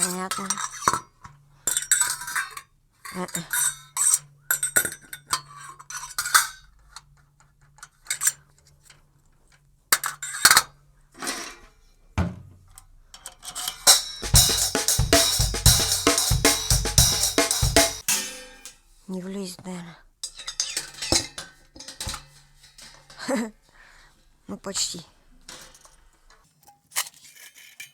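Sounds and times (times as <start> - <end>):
metal drum hardware clinking: 13.7 - 18.8, 20.2 - 23.2
cymbals ringing: 13.9 - 18.8
drum kit playing: 13.9 - 18.8.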